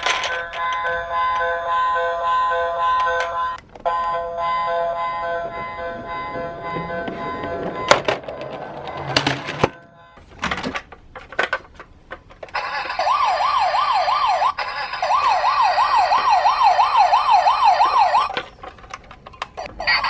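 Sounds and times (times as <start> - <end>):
toy police siren wailing: 12.5 - 18.4, 19.6 - 20.0.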